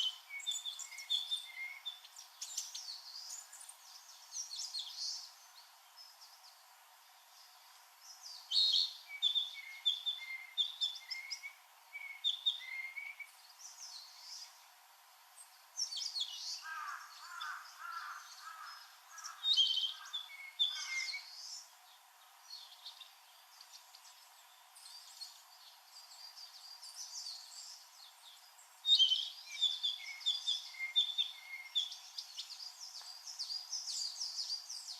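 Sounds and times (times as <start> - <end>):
bird singing whistled phrases: 0.0 - 2.0, 8.5 - 13.4, 28.9 - 32.0
songbirds singing: 0.0 - 34.9.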